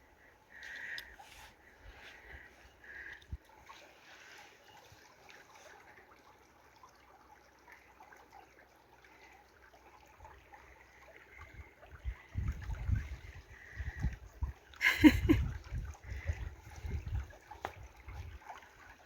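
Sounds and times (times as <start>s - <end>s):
creek water trickling: 0.0s - 19.0s.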